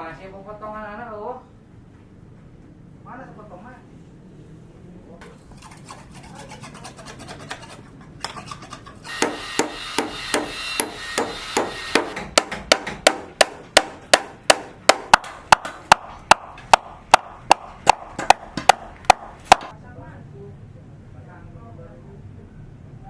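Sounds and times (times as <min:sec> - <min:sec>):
hand hammering: 0:09.1 - 0:19.7.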